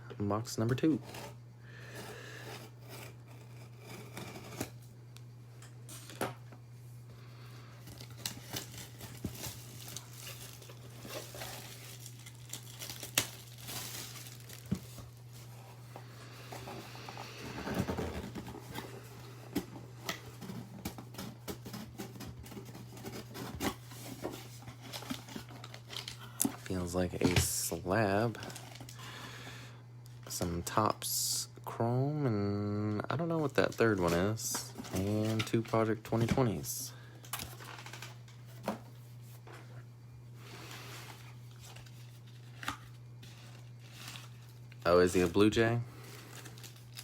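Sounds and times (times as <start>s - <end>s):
steady low hum: 0.0s - 47.0s
wrapping tearing and crinkling: 7.8s - 15.8s, 20.0s - 26.9s, 28.3s - 29.0s, 33.6s - 35.9s, 37.2s - 38.4s, 40.5s - 47.0s.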